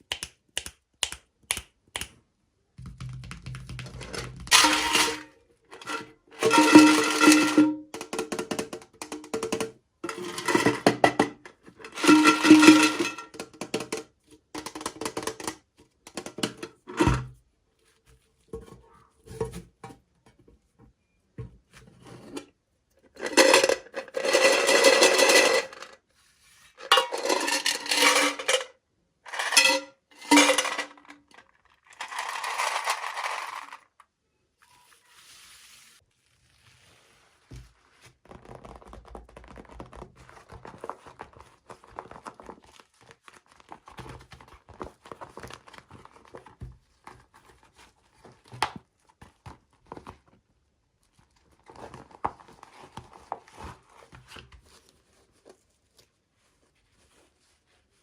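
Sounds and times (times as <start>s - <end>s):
plastic crinkling and clinking: 26.8s - 28.7s.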